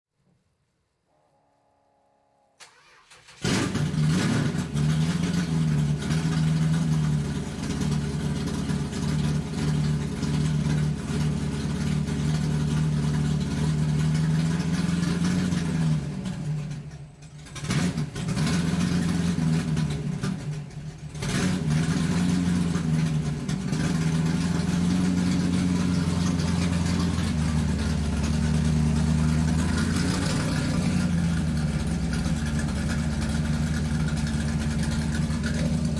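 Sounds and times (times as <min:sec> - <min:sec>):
vehicle motor running loudly: 0:03.5 - 0:35.9.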